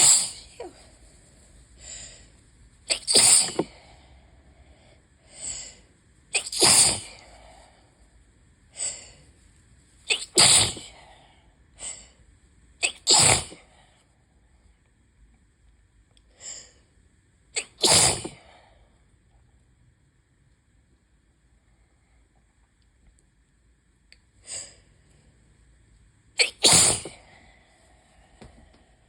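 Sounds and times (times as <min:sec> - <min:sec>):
person sneezing: 0:00.0 - 0:01.0, 0:02.9 - 0:03.8, 0:06.3 - 0:07.3, 0:10.1 - 0:11.0, 0:12.8 - 0:13.7, 0:17.6 - 0:18.5, 0:26.4 - 0:27.4.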